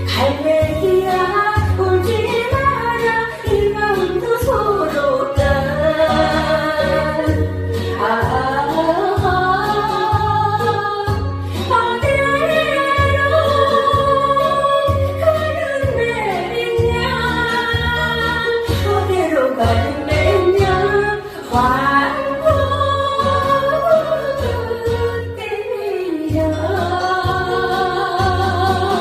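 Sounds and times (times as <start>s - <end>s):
woman singing with vibrato: 0.0s - 29.0s.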